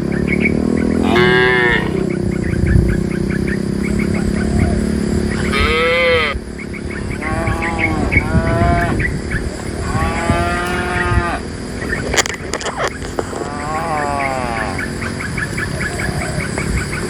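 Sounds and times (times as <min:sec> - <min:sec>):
cattle mooing: 0:01.0 - 0:02.1, 0:05.3 - 0:06.4, 0:07.0 - 0:09.0, 0:09.6 - 0:11.6, 0:13.2 - 0:15.1.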